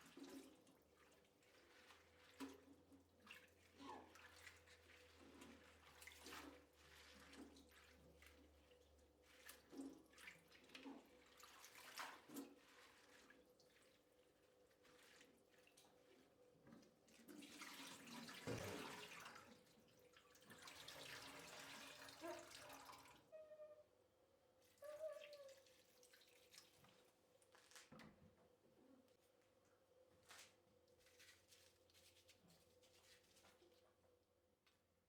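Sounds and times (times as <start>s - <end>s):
kitchen tap running water: 17.4s - 19.6s, 20.4s - 23.2s.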